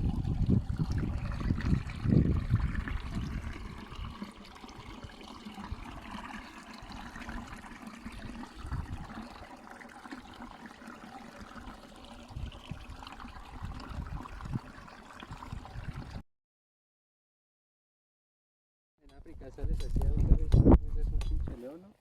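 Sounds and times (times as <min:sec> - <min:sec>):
water trickling: 0:00.0 - 0:16.2.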